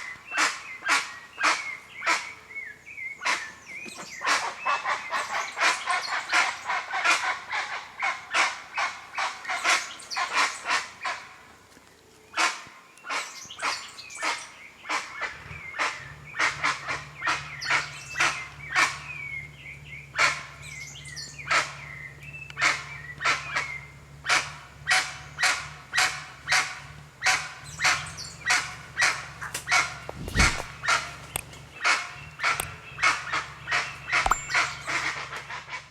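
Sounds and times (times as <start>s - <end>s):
faint warbling bird song: 13.2s - 25.7s, 26.4s - 35.8s.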